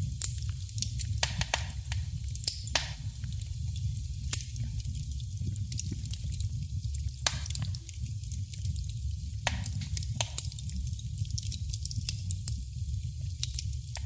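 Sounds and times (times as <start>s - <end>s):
fire pops: 0.0s - 14.0s
low rumble of flames: 0.0s - 14.0s
wood fire crackling: 0.0s - 14.0s.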